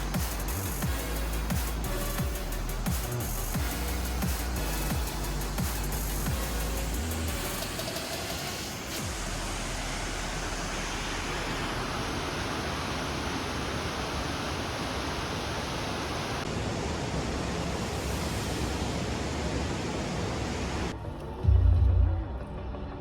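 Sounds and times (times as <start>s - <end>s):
waterfall roaring: 7.8s - 20.9s.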